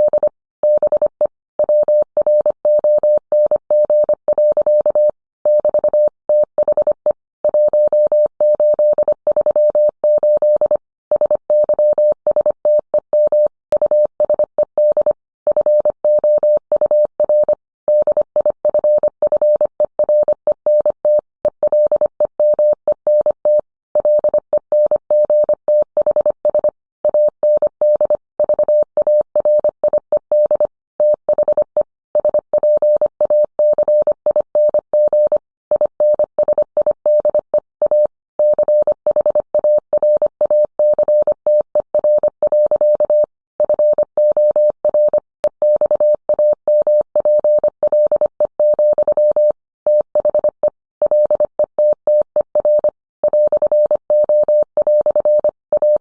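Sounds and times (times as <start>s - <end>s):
morse code tone: 37.0s - 56.0s.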